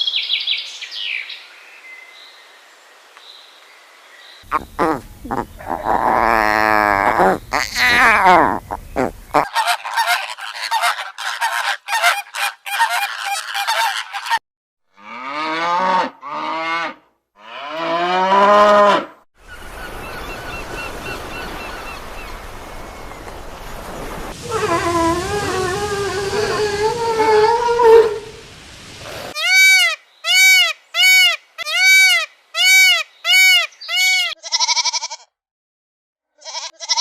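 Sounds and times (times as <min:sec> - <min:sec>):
long wavering animal calls: 0:04.5 - 0:11.0, 0:24.3 - 0:28.6
honking calls: 0:04.5 - 0:14.4, 0:19.6 - 0:28.6.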